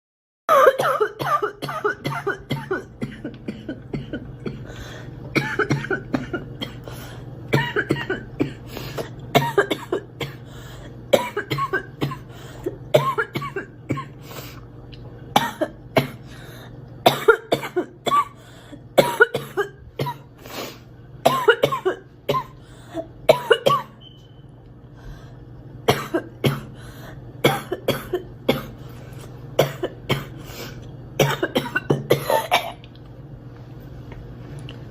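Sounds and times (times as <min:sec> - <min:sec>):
girl coughing: 0:00.5 - 0:04.7, 0:05.3 - 0:06.9, 0:07.5 - 0:10.4, 0:11.1 - 0:14.2, 0:15.4 - 0:16.2, 0:17.0 - 0:18.4, 0:19.0 - 0:20.3, 0:21.2 - 0:24.0, 0:25.9 - 0:26.7, 0:27.4 - 0:28.8, 0:29.6 - 0:30.4, 0:31.2 - 0:32.8.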